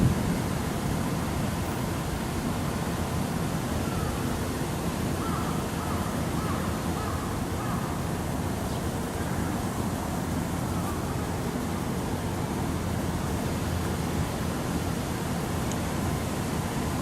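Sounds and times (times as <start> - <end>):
wind buffeting microphone: 0.0 - 1.5.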